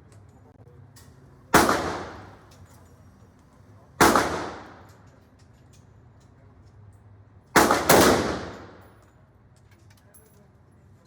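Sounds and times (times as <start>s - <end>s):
gunshots echoing: 1.6s - 2.4s, 4.0s - 4.9s, 7.6s - 8.8s.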